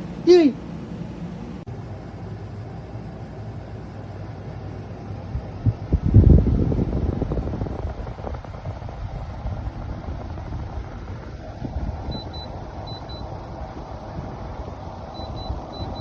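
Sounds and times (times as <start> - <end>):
air conditioner fan running: 0.0 - 16.0
steady hum: 0.0 - 16.0
low rumble: 5.2 - 16.0.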